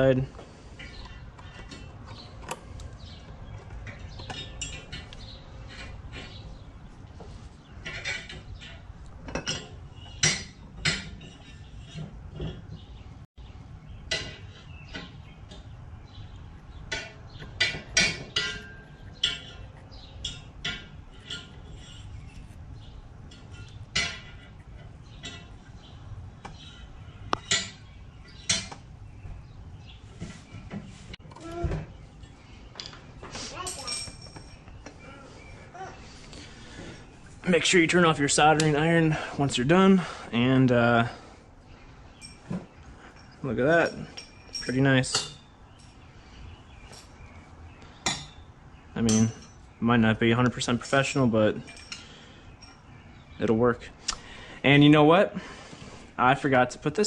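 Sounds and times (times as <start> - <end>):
clinks of small metal tools: 33.6 - 34.7, 42.2 - 46.0, 51.6 - 52.8.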